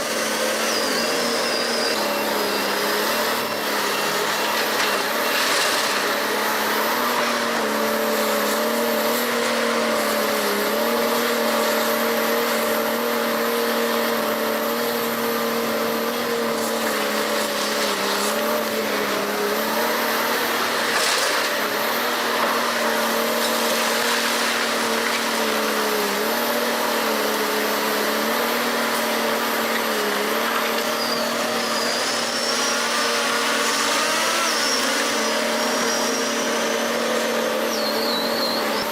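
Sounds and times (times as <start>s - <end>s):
heavy machine engine droning: 0.0s - 38.9s.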